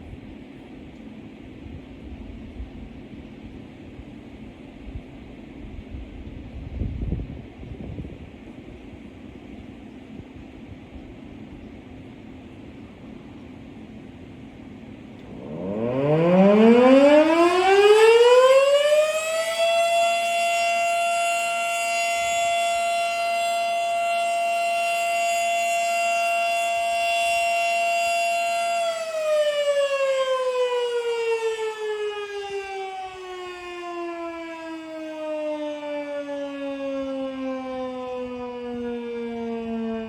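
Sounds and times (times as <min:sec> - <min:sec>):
fire siren wailing: 0:14.6 - 0:40.0.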